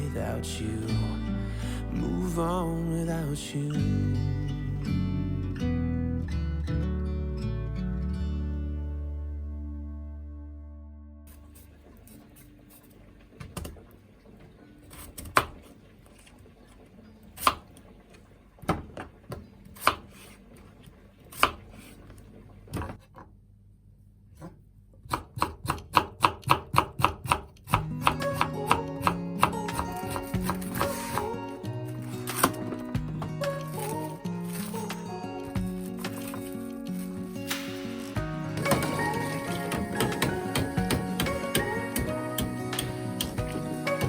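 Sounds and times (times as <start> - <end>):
knife chopping on cutting board: 24.4 - 31.2.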